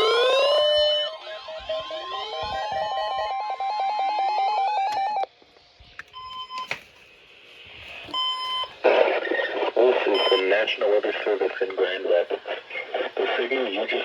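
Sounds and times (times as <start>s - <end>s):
steady alarm tone: 0.0s - 5.2s, 10.2s - 10.6s
rising siren-like sweeps: 0.0s - 5.3s
faint radio hiss: 6.8s - 14.0s
short electronic beeps: 8.1s - 8.8s, 10.2s - 10.5s.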